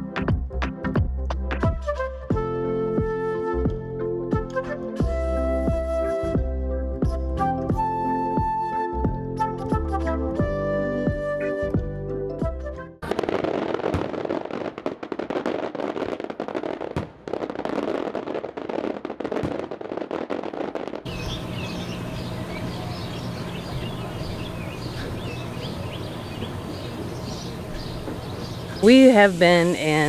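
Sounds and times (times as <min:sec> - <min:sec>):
fireworks crackling and popping: 0:13.0 - 0:24.8
high chirps: 0:21.1 - 0:29.5
steady low hum: 0:21.1 - 0:30.0.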